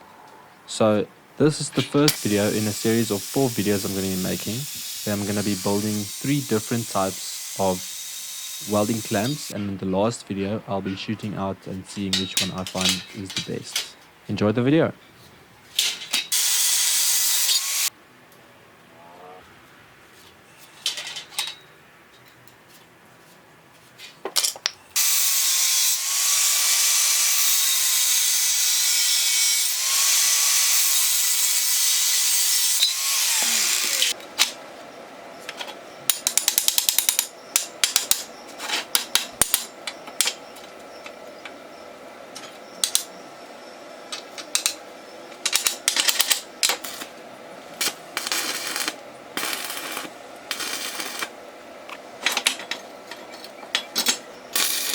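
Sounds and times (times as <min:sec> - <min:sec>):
power tool grinding metal: 0:02.1 - 0:09.6, 0:16.3 - 0:17.9, 0:25.0 - 0:34.2, 0:47.8 - 0:51.3, 0:54.1 - 0:54.9
hand tools rattling on metal: 0:11.9 - 0:14.0, 0:45.4 - 0:47.1, 0:52.2 - 0:54.9.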